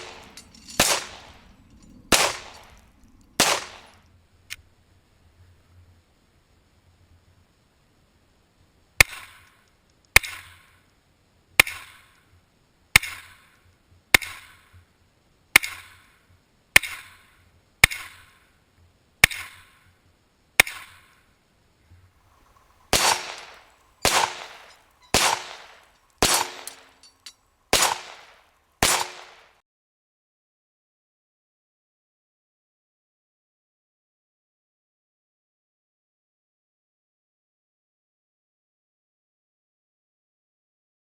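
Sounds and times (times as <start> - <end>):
pistol shots: 0.0 - 1.5, 2.1 - 2.8, 3.4 - 4.0, 22.8 - 29.6.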